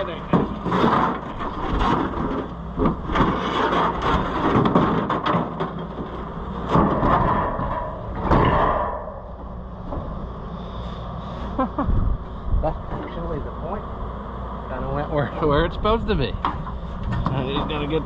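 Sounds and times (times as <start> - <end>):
metal scraping: 0.0 - 10.1.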